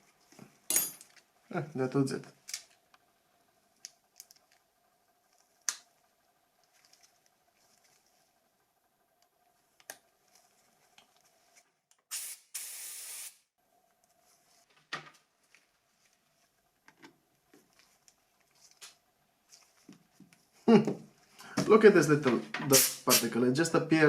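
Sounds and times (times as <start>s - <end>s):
short blast of air: 12.1s - 13.4s, 22.7s - 23.3s.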